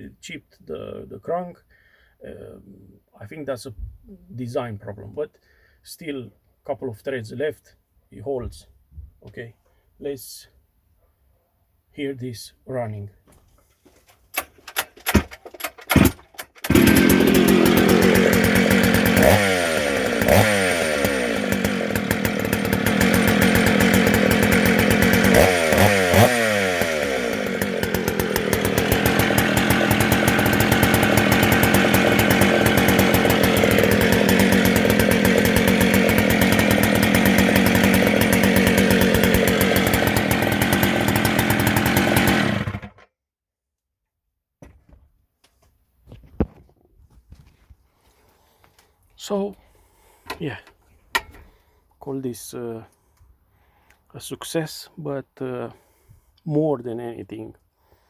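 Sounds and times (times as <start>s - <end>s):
chainsaw engine popping: 14.2s - 43.0s
chainsaw engine idling and revving: 14.4s - 43.1s.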